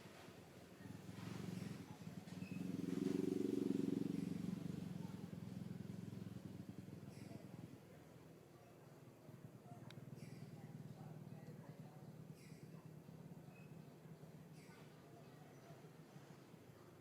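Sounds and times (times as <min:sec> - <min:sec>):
motor vehicle passing by: 0:00.8 - 0:07.8.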